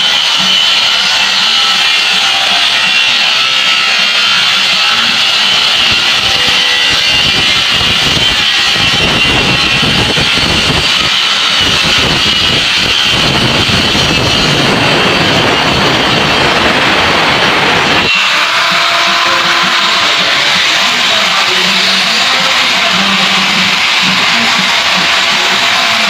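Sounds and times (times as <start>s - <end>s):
power tool running loudly: 0.0s - 26.0s
low rumble: 11.8s - 18.1s.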